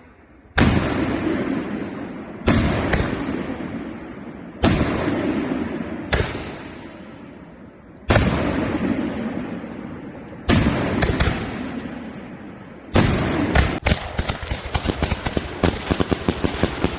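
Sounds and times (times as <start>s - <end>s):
rumbling echo: 0.5s - 16.9s
firework bangs: 13.0s - 16.9s.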